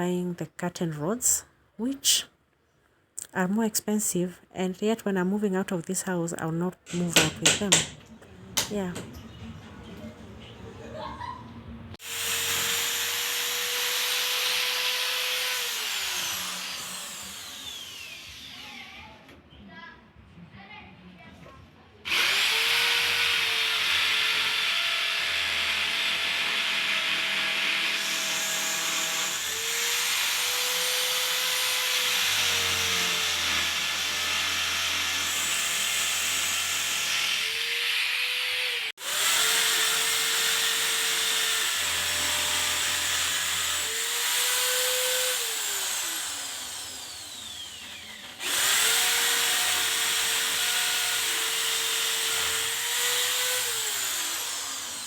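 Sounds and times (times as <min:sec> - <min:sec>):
electric power drill running: 0:12.0 - 0:18.9, 0:22.1 - 0:55.0.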